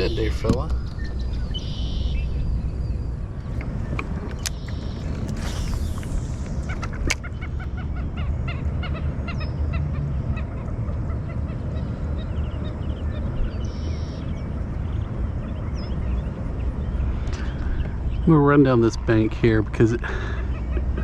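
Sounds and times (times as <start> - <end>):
steady low rumble: 0.0 - 21.0.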